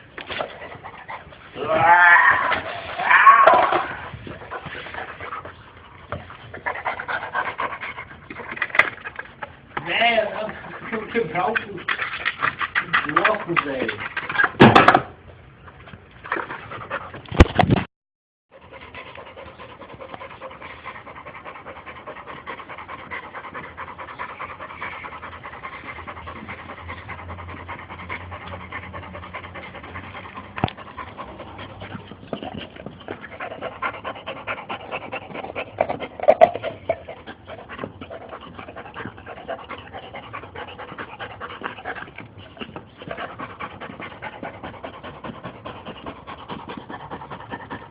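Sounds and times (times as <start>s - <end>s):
dog panting rapidly: 4.0s - 14.7s, 16.3s - 17.7s, 18.5s - 47.9s.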